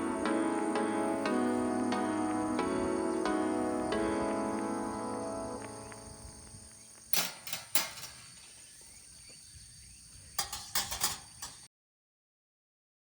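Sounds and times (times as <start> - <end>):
music: 0.0 - 6.6
metal parts clinking and knocking: 7.1 - 8.5, 10.4 - 11.7.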